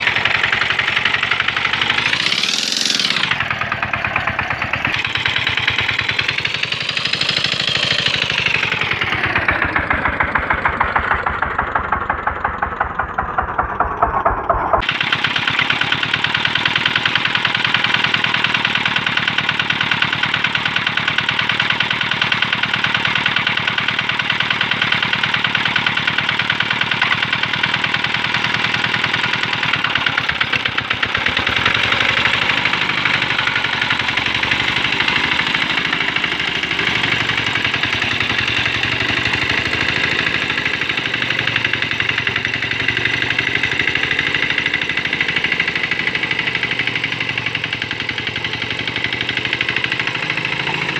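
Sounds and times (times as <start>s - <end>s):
small diesel engine knocking: 0.0s - 50.9s.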